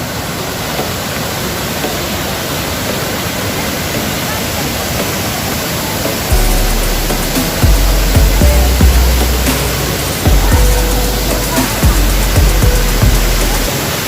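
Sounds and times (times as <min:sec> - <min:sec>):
waterfall crashing: 0:00.0 - 0:14.0
loud low rumble: 0:06.3 - 0:13.7.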